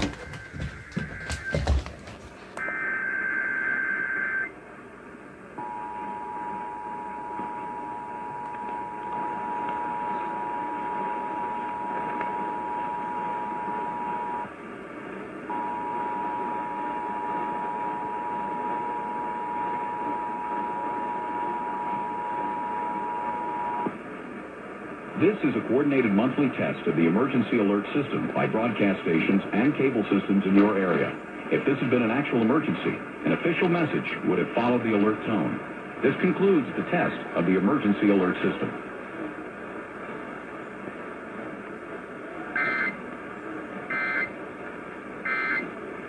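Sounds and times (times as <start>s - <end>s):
radio hiss: 0.0s - 46.0s
two-tone attention signal: 42.6s - 43.0s.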